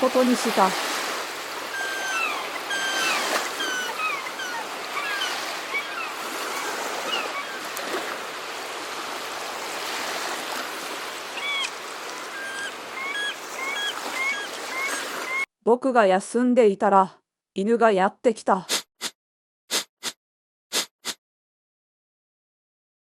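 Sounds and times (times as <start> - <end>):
surf washing: 0.0 - 15.4
seagulls crying: 0.8 - 8.4, 10.8 - 15.5.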